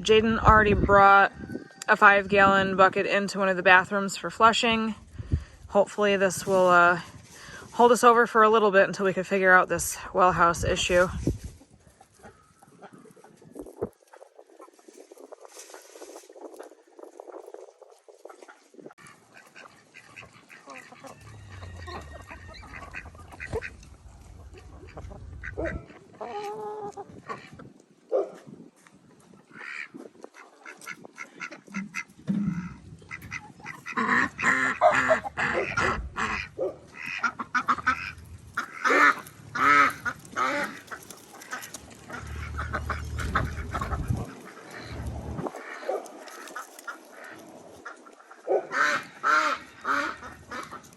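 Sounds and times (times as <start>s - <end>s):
waterfowl honking and quacking: 18.2s - 27.7s, 29.3s - 50.9s.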